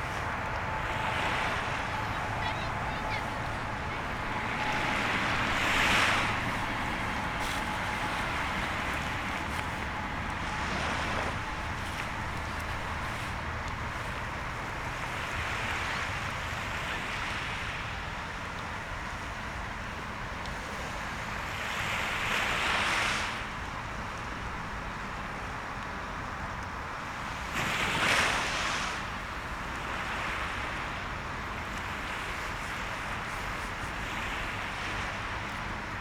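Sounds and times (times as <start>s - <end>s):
wind rumbling on microphone: 0.0s - 17.1s
sea waves washing onto shore: 0.0s - 36.0s.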